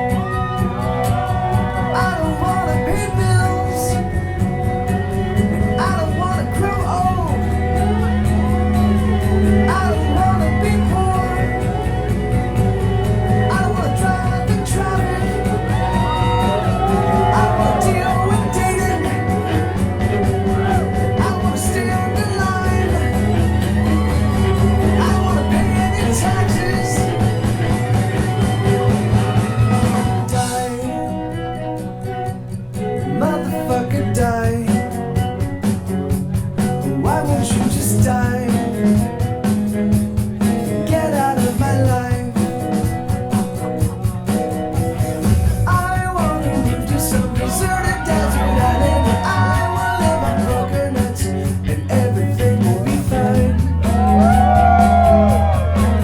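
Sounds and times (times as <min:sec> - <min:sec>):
rock and roll song with singing: 0:00.0 - 0:56.0.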